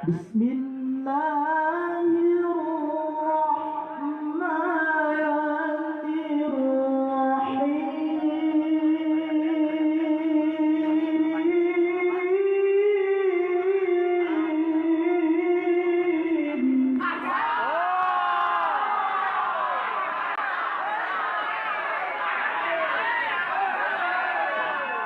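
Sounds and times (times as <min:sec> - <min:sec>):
person chanting a recitation: 0:00.0 - 0:17.5.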